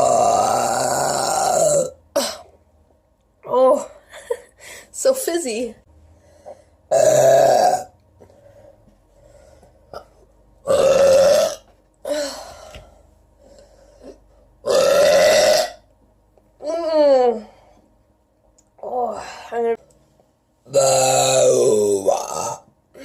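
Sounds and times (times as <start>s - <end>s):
woman burping loudly: 0.0s - 2.6s, 6.9s - 8.0s, 9.9s - 12.4s, 14.6s - 15.9s, 20.7s - 23.0s.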